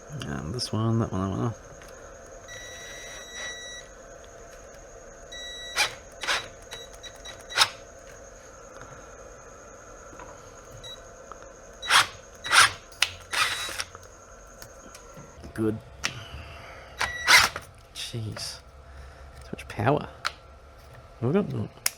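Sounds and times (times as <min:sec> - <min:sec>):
power drill boring metal: 0:05.7 - 0:06.6, 0:11.8 - 0:13.9, 0:17.0 - 0:17.6.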